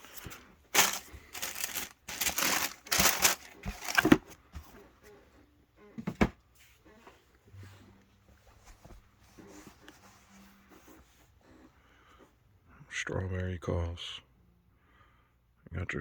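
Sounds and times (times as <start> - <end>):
paper packaging crumpling: 0.0 - 4.3.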